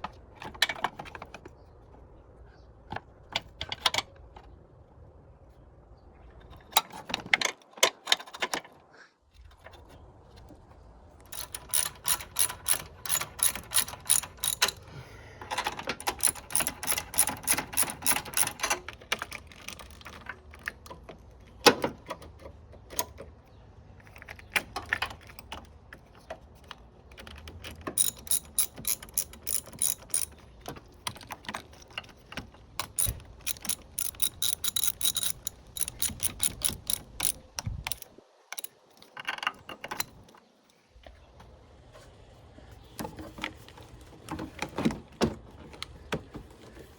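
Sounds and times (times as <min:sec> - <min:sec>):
ratchet wrench clicking: 0:11.3 - 0:14.9, 0:16.1 - 0:18.7, 0:28.0 - 0:30.3, 0:32.8 - 0:38.7.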